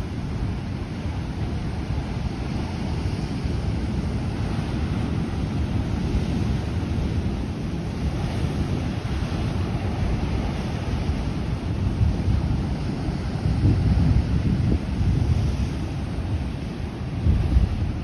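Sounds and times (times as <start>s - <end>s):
surf washing over rocks: 0.0s - 18.0s
wind on microphone: 0.0s - 18.0s.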